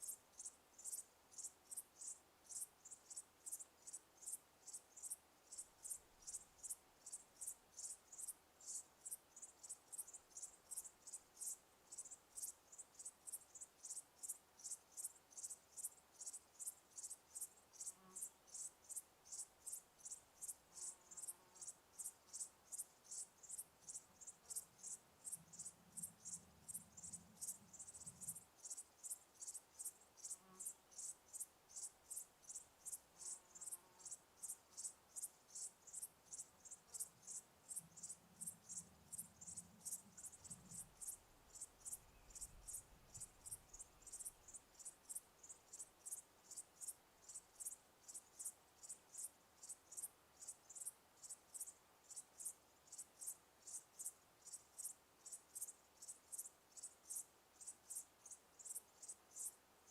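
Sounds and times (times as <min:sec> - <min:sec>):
cricket chirping: 0:00.0 - 0:59.9
faint low hum: 0:22.6 - 0:31.0, 0:34.0 - 0:48.8.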